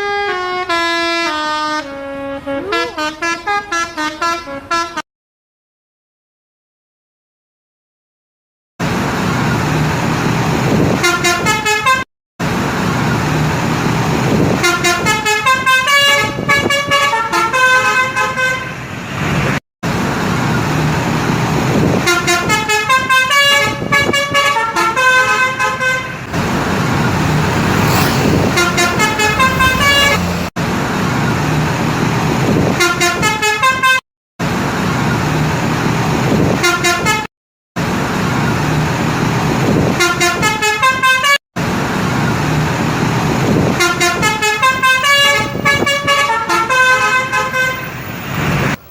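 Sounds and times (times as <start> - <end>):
bus engines and traffic: 8.8 - 33.3, 41.6 - 48.9
multi-tone bus horns tooting: 14.6 - 18.8, 22.1 - 30.5, 43.8 - 48.2.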